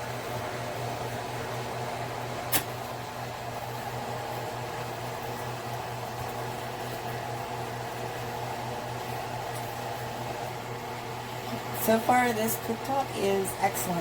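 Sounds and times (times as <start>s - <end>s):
cooling fan hum: 0.0s - 14.0s
sharp click: 2.5s - 2.7s.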